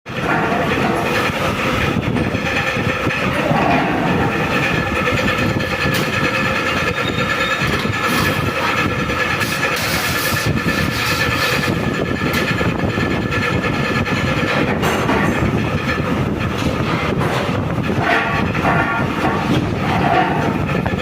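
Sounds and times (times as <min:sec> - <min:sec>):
faint machine whine: 0:00.1 - 0:09.5
bending machine clatter: 0:00.1 - 0:21.0.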